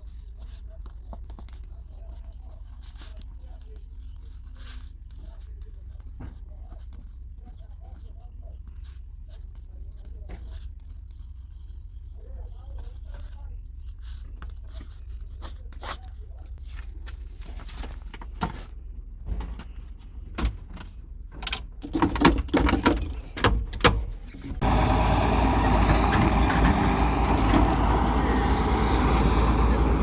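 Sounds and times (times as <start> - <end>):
clanks and knocks: 19.2 - 27.9
low engine rumble: 23.0 - 30.0
loud steady machine noise: 24.6 - 30.0.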